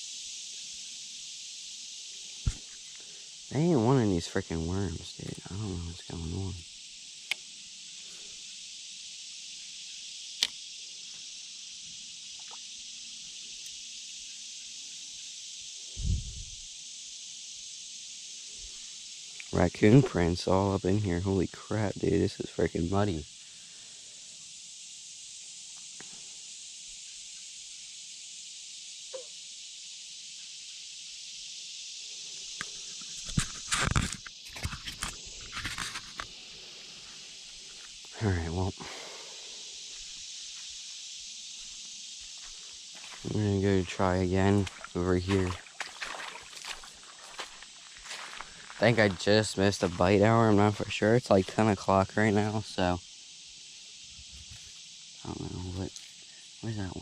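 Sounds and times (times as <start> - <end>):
high-pitched hiss: 0.0 - 57.0
footsteps in mud: 42.4 - 43.4, 44.6 - 50.1.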